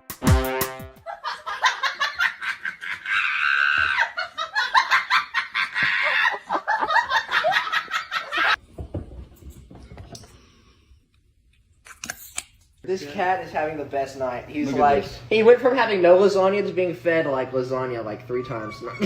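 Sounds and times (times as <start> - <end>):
person laughing hard: 1.0 - 8.6.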